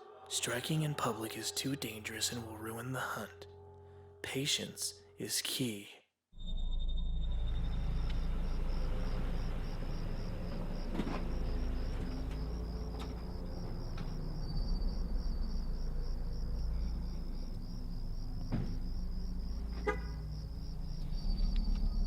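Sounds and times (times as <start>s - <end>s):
crickets chirping: 6.4s - 22.0s
low traffic rumble: 6.9s - 22.0s
car horn toot: 19.8s - 20.3s.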